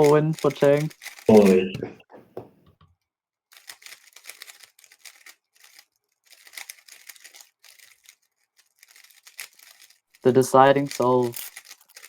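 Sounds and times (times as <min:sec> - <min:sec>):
speed cube clicking and rattling: 0:00.0 - 0:01.3, 0:03.5 - 0:12.0.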